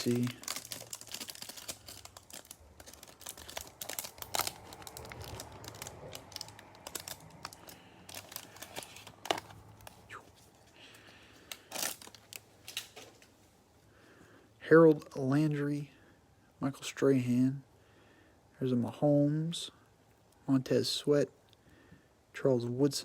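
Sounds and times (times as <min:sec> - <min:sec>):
plastic and cardboard crinkling: 0:00.0 - 0:13.4.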